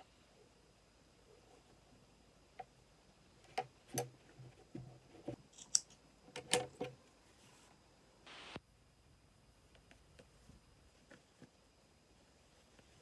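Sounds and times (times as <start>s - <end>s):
small objects clicking and knocking: 5.5s - 6.9s.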